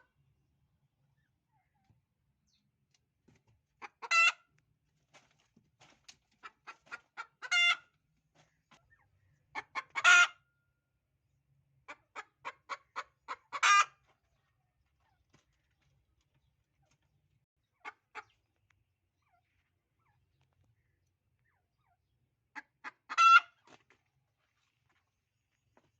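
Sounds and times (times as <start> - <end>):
hen cackling: 3.8 - 4.4, 7.2 - 7.8, 9.6 - 10.4, 12.2 - 14.0, 22.6 - 23.6.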